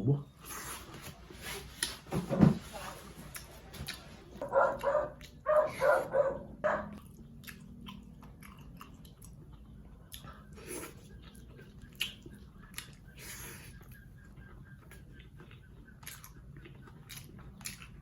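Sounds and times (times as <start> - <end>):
dog barking: 4.4 - 7.0.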